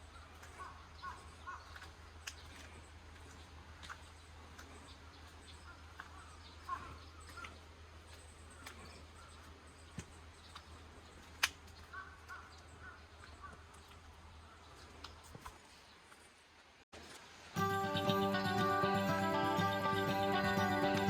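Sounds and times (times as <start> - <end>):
faint bird calls: 0.0 - 10.6, 11.2 - 14.8.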